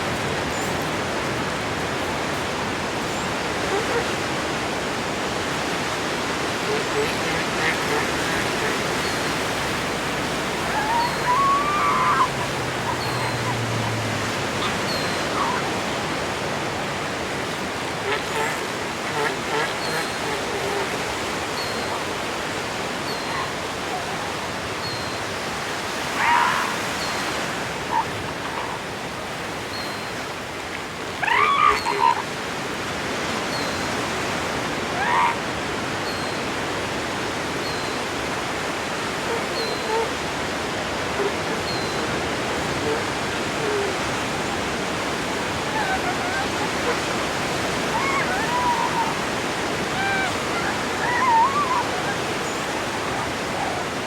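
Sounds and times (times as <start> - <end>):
seal calls: 0.0 - 29.6, 30.9 - 54.0
surf on a beach: 0.0 - 54.0.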